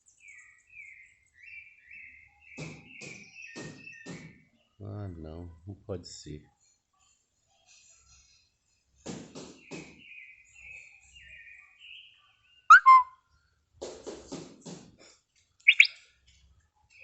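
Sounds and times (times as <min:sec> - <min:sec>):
bird chirping: 0:00.0 - 0:04.5, 0:10.0 - 0:13.1, 0:15.7 - 0:16.0
loud bird calls: 0:15.7 - 0:16.0.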